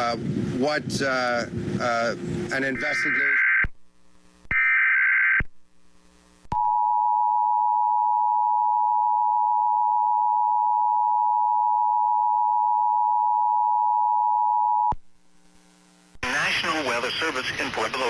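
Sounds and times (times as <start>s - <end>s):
two-tone emergency alert signal: 2.7s - 3.6s.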